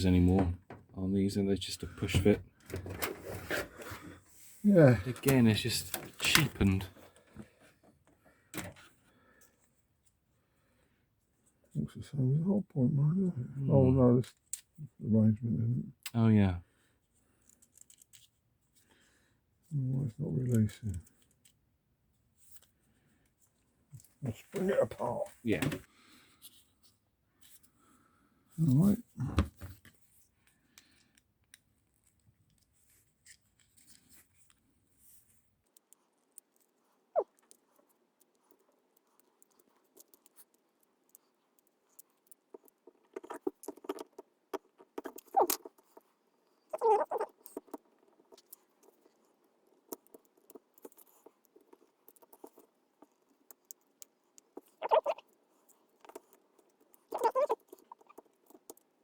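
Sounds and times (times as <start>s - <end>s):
plastic parts clicking and scraping: 5.0s - 8.9s, 17.4s - 18.9s, 35.5s - 54.8s, 55.6s - 59.0s.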